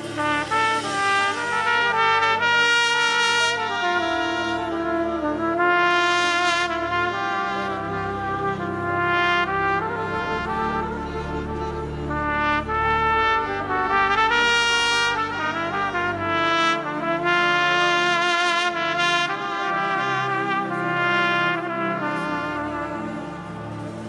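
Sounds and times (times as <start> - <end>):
sustained low accompaniment: 0.0 - 24.0
trumpet playing slow melody: 0.0 - 24.0.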